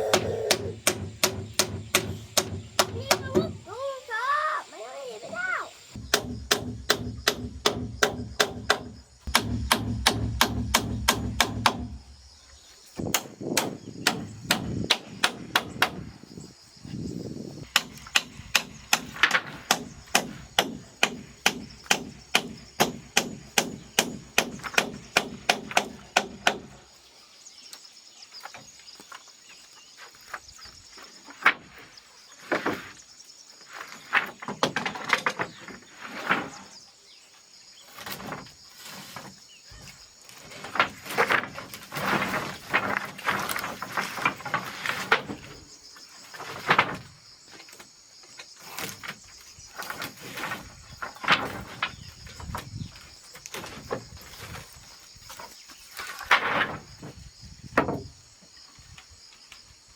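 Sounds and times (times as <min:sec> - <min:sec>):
hand tool striking wood: 0:00.0 - 0:03.6, 0:06.0 - 0:12.1, 0:13.0 - 0:16.1, 0:17.6 - 0:26.8.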